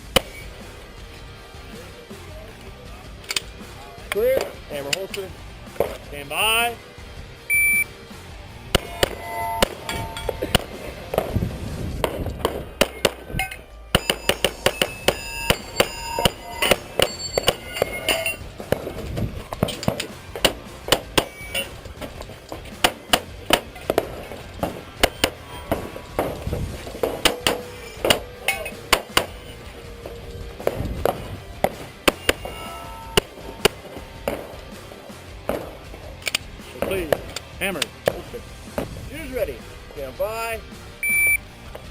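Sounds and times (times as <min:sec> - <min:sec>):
steel target ringing: 0:08.8 - 0:10.8, 0:12.9 - 0:18.4, 0:27.0 - 0:30.7, 0:32.0 - 0:33.7
pistol shots: 0:12.0 - 0:32.5, 0:33.2 - 0:34.6, 0:35.5 - 0:37.4.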